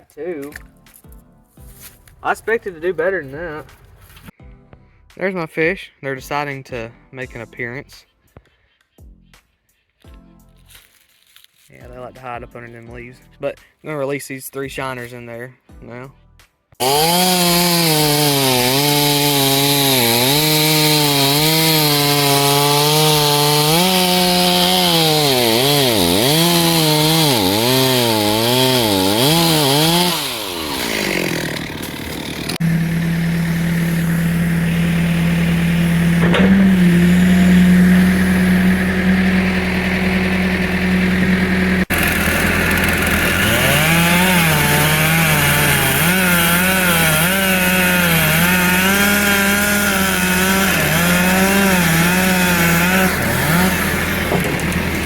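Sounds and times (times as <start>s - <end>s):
chainsaw cutting wood: 16.8s - 55.0s.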